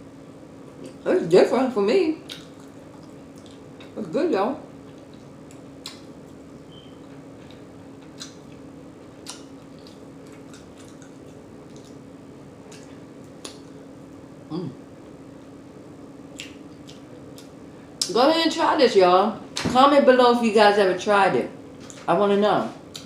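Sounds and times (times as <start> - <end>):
steady low hum: 0.0 - 23.0
person chewing: 2.2 - 4.0, 4.9 - 13.9, 16.3 - 17.6.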